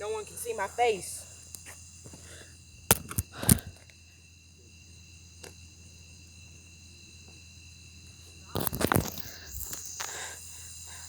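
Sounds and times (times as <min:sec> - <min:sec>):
insects chorusing: 0:00.0 - 0:11.0
sharp clicks or knocks: 0:02.9 - 0:03.8.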